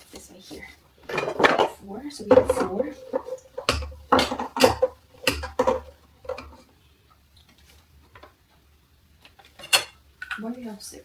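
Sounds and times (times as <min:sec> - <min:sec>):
drying rack parts knocking and clinking: 0:01.0 - 0:06.6.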